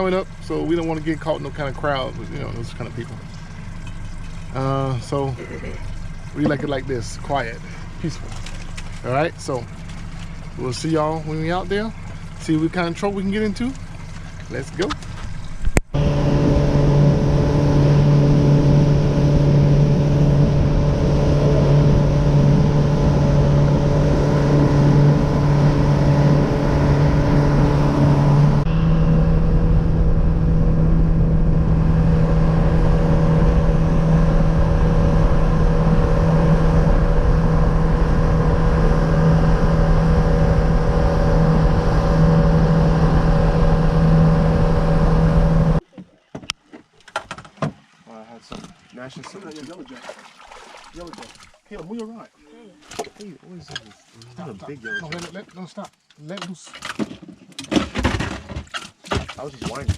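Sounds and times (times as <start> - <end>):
wind and water rushing: 0.0 - 45.8, 47.8 - 52.0
motorboat engine running: 0.0 - 46.0.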